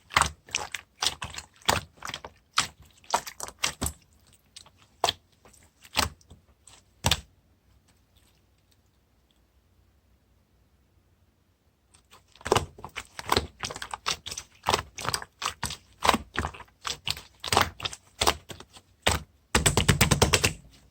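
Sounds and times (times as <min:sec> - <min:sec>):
sharp clicking taps: 0:19.6 - 0:20.6.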